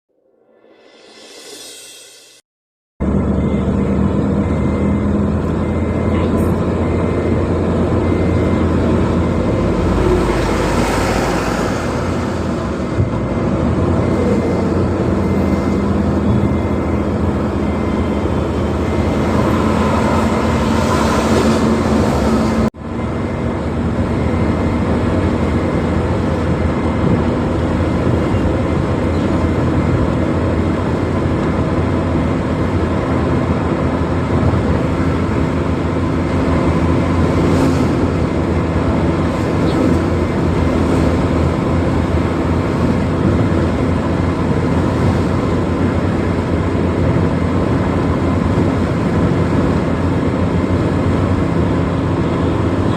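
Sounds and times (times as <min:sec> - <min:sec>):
rushes of noise: 0:00.4 - 0:02.4, 0:09.1 - 0:15.8
car engine hum: 0:03.0 - 0:52.9
tyre and road noise: 0:03.0 - 0:52.9.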